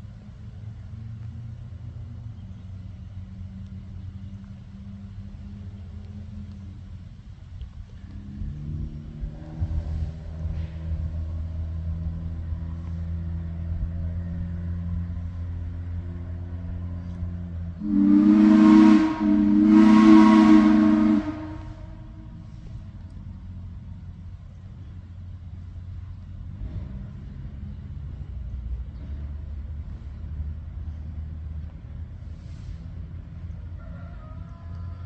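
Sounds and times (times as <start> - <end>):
locomotive running: 0.0 - 35.0
train whistle blasts: 17.8 - 22.5.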